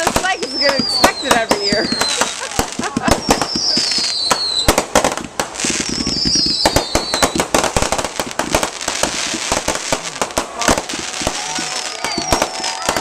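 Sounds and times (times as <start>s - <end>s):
fireworks cracking and banging: 0.0s - 13.0s
firework whistle falling in pitch: 5.8s - 7.4s, 11.1s - 13.0s.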